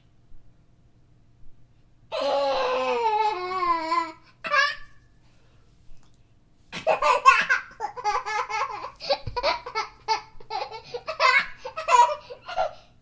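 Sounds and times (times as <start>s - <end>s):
young child laughing: 6.8s - 12.8s.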